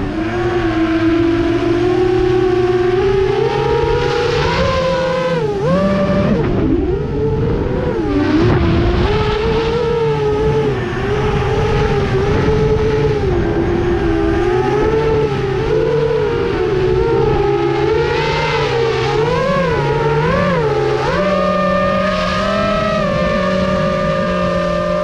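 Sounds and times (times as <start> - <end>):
drone motors whining: 0.0 - 25.0.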